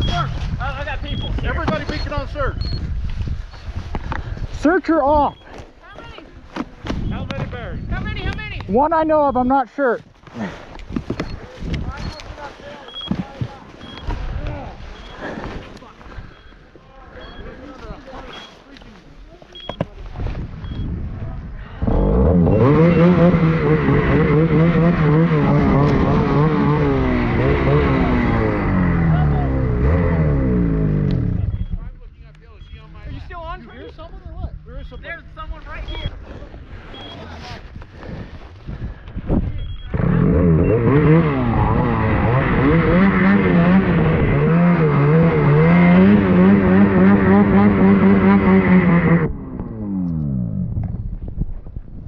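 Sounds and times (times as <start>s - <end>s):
transceiver short high beeps: 1.0s - 2.9s, 12.0s - 13.2s, 36.9s - 37.3s
snowmobile engine running hard: 21.8s - 31.5s, 39.9s - 49.4s.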